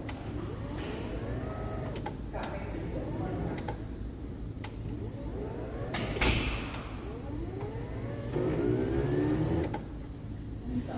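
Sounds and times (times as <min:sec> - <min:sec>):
garage door opener click: 0:00.0 - 0:03.8, 0:04.6 - 0:09.9
motor whine rising in pitch: 0:00.4 - 0:02.0, 0:04.9 - 0:06.2, 0:07.0 - 0:09.8.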